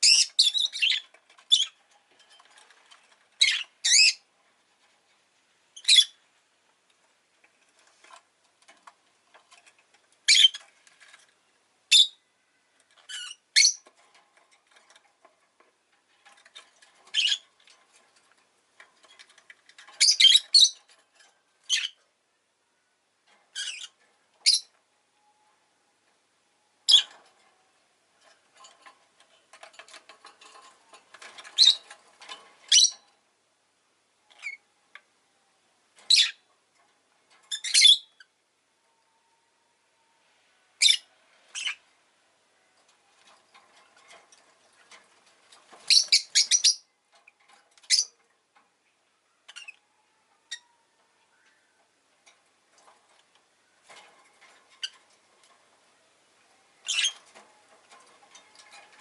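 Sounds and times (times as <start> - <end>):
faint scratching and rustling: 0.0 - 39.2, 40.2 - 59.0.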